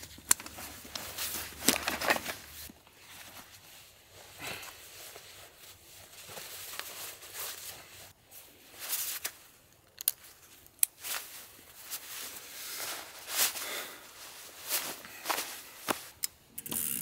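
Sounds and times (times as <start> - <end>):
rustling and scuffing: 0.0 - 16.2.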